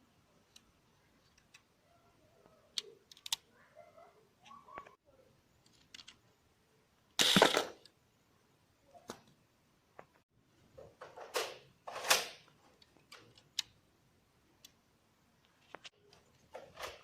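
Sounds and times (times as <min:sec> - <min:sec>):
plastic clicks and rattles: 0:02.7 - 0:03.5, 0:05.6 - 0:06.2.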